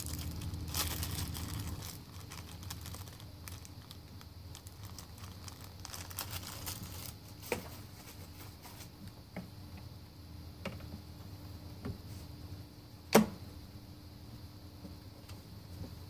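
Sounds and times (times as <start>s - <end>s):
crinkling: 0.0s - 9.1s
low room hum: 0.0s - 16.0s.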